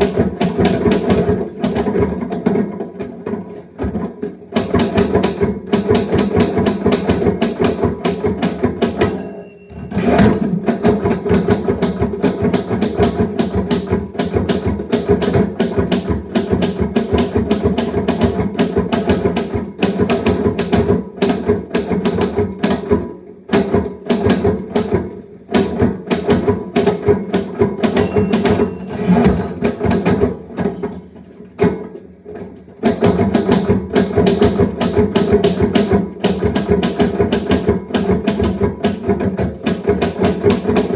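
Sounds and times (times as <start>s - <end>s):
typewriter bell ding: 9.0s - 10.3s, 28.0s - 29.3s.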